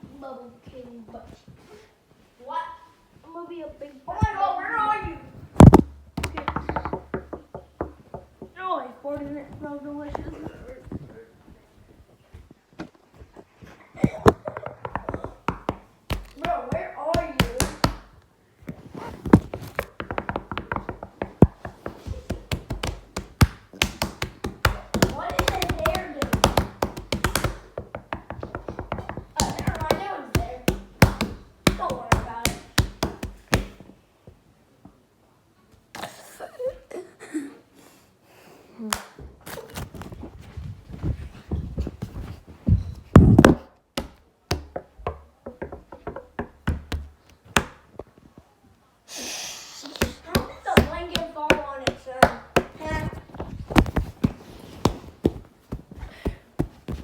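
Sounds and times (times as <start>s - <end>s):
rapid tapping and knocking: 5.6s - 8.7s, 14.1s - 18.1s, 19.3s - 33.9s, 43.2s - 47.8s.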